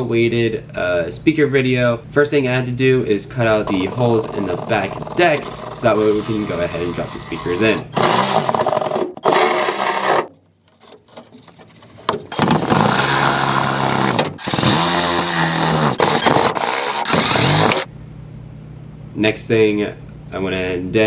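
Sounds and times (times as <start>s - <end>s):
power tool cutting: 3.7s - 10.3s, 12.3s - 17.9s.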